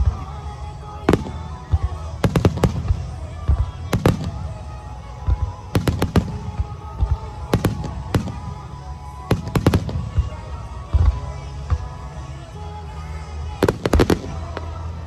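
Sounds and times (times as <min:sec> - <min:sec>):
music: 0:00.0 - 0:15.0
fireworks bangs: 0:01.1 - 0:04.6, 0:05.3 - 0:10.4, 0:13.6 - 0:15.0.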